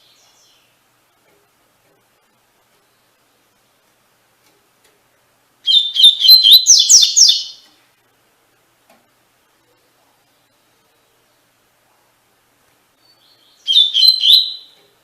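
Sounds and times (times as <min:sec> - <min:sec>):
bird singing high repeated notes: 0:05.6 - 0:07.6, 0:13.0 - 0:14.8.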